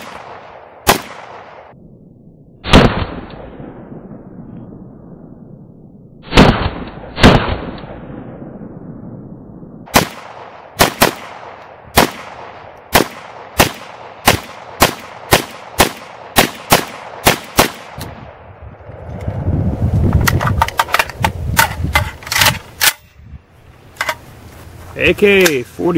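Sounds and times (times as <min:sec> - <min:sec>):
rifle shots with echo: 0:00.0 - 0:01.8, 0:02.6 - 0:04.4, 0:06.2 - 0:08.8, 0:09.9 - 0:18.5.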